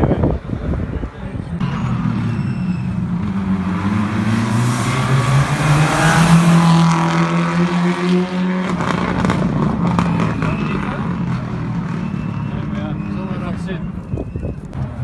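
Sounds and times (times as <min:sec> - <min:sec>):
car engine accelerating hard: 0:01.6 - 0:13.1.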